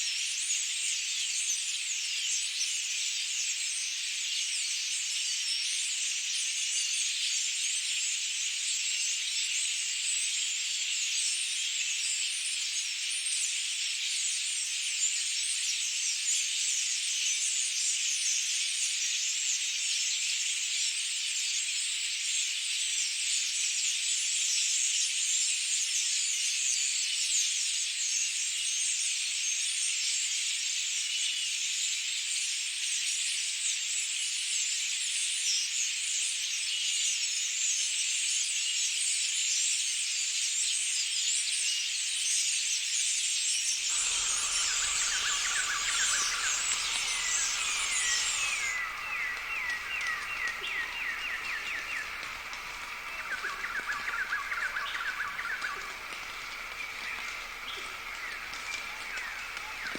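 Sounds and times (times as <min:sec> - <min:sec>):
insect chorus buzzing: 0:43.8 - 0:59.9.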